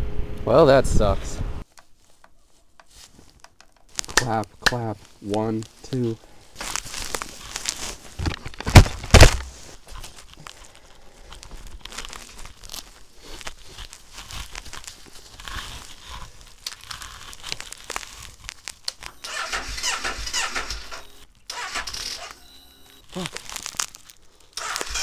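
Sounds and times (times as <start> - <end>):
motorcycle starter turning over weakly: 19.2 - 22.4, 24.6 - 25.0.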